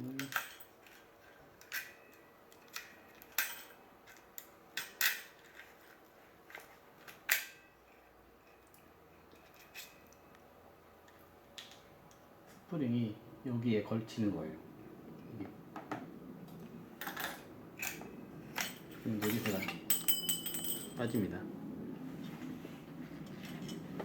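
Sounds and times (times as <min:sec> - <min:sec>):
small metal clicks: 0:00.0 - 0:07.6.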